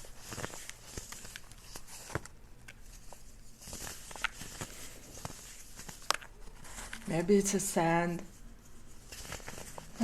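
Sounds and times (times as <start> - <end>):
faint hiss: 4.4 - 5.8.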